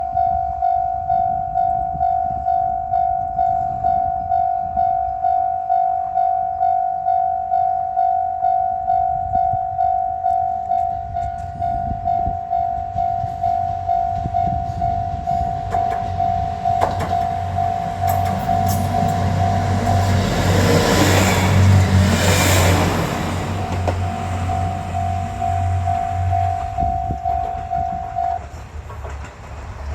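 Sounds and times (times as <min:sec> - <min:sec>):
diesel railcar engine rumble: 0:00.0 - 0:29.9
train wheel clacks: 0:10.7 - 0:29.9.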